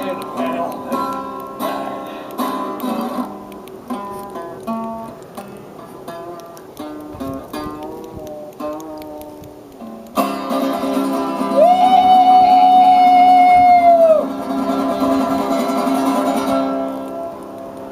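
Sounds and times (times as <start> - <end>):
guitar music: 0.0 - 17.9.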